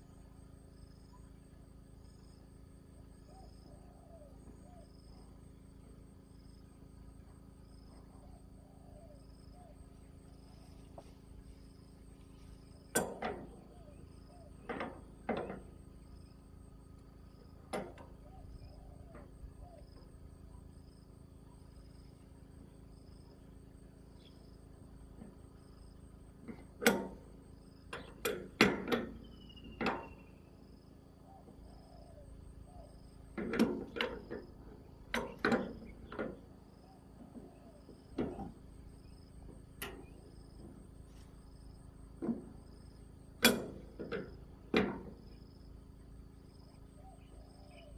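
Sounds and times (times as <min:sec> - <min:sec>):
faint pulsing high chirp: 0:00.0 - 0:12.9, 0:15.9 - 0:26.4, 0:29.2 - 0:33.3, 0:46.2 - 0:47.9
sharp knocks and clanks: 0:12.9 - 0:13.7, 0:14.6 - 0:15.8, 0:26.4 - 0:30.2, 0:33.3 - 0:36.5, 0:37.2 - 0:38.7, 0:42.1 - 0:42.6, 0:43.4 - 0:45.4.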